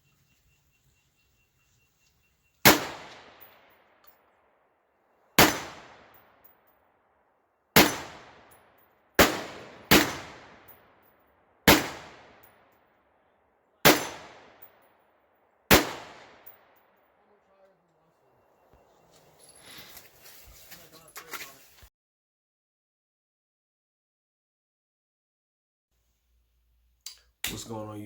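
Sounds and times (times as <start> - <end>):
rifle shots with echo: 2.6 - 3.9, 5.4 - 6.4, 7.8 - 11.0, 11.6 - 12.8, 13.8 - 14.9, 15.7 - 16.8.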